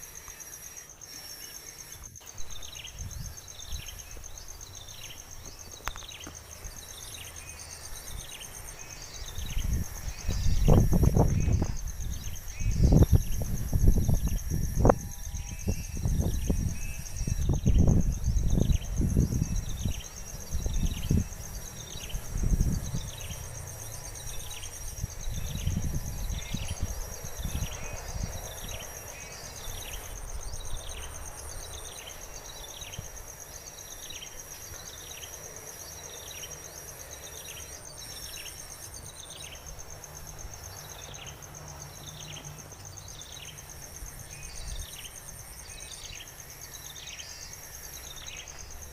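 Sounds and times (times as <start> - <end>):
high insect trill: 0.0 - 48.9.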